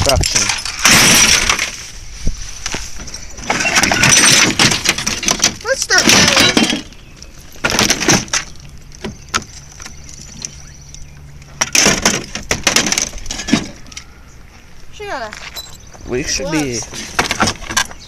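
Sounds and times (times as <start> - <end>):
broken glass and plastic crunching: 0.0 - 1.8, 3.0 - 8.8, 11.6 - 14.1.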